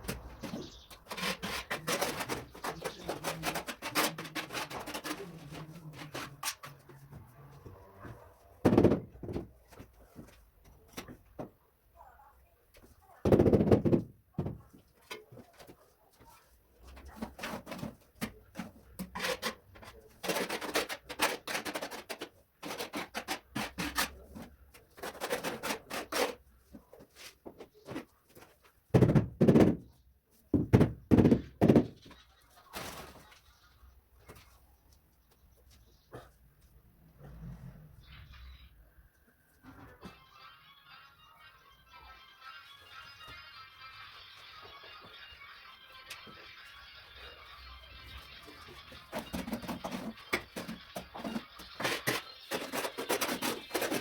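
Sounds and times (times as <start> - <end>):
hand tools scraping tile: 0.0 - 7.8, 16.9 - 28.0, 48.8 - 54.0.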